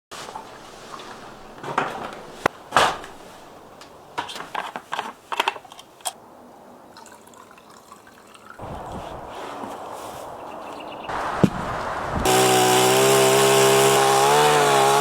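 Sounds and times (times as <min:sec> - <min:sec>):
blade shaving wood: 0:12.2 - 0:15.0.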